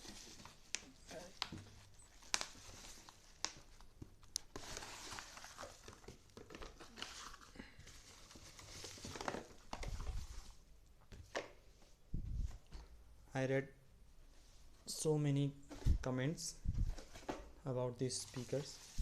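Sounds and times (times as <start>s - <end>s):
packaging crinkling and rustling: 0.0s - 10.6s.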